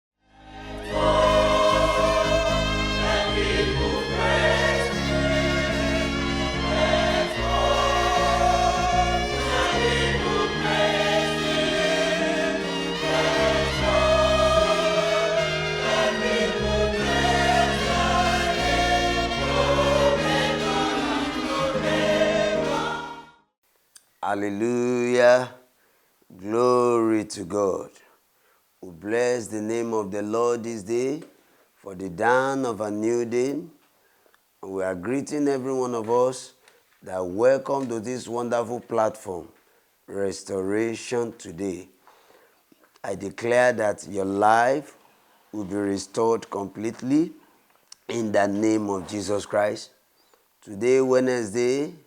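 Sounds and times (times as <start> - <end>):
gospel choir singing: 0.3 - 23.4, 45.5 - 47.3, 48.1 - 49.8.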